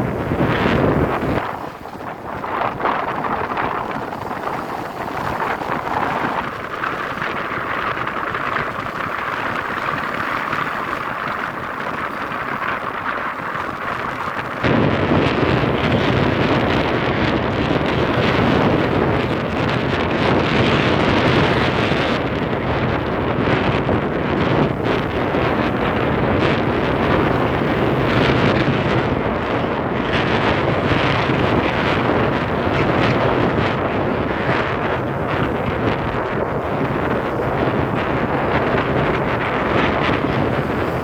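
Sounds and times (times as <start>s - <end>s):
wind buffeting microphone: 0.0s - 41.0s.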